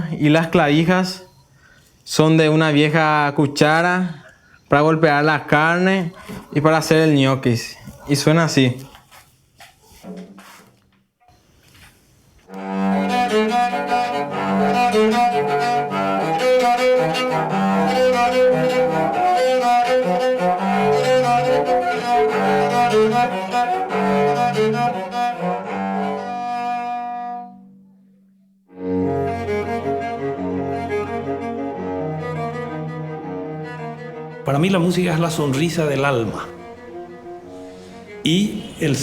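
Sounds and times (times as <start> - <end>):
bowed cello melody: 12.5 - 27.9, 28.7 - 39.0.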